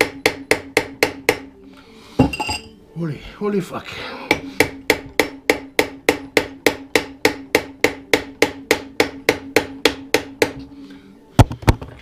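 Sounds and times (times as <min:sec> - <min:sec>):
metallic ring: 0:02.2 - 0:02.8.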